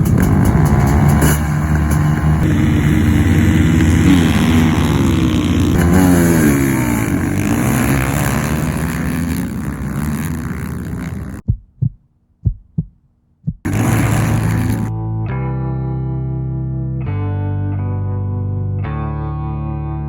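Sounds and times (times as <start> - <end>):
racing engines revving: 0.0 - 11.4, 13.7 - 14.9
low thumps: 11.1 - 14.9.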